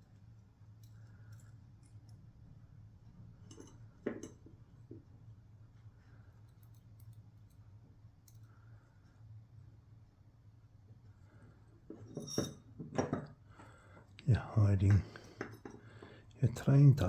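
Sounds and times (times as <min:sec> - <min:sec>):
small clicks of lock pins: 0:00.8 - 0:02.2, 0:06.4 - 0:07.6, 0:08.2 - 0:08.5
low steady hum: 0:13.5 - 0:17.0.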